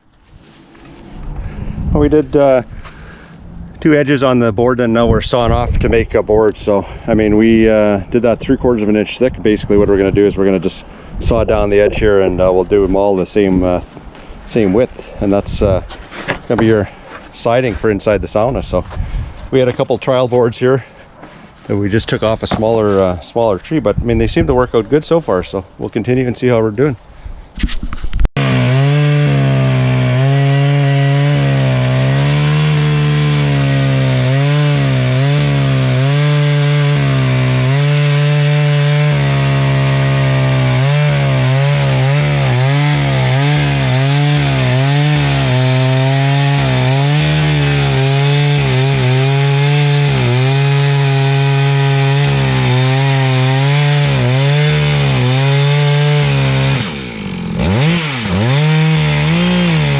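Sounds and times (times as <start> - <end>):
chainsaw cutting wood at high revs: 28.4 - 59.9.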